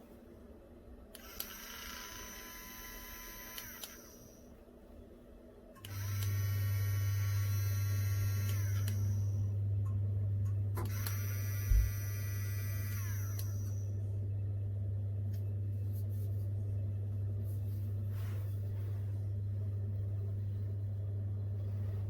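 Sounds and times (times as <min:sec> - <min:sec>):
milk frother motor whirring: 0:01.2 - 0:04.5, 0:05.8 - 0:09.6, 0:10.8 - 0:14.0.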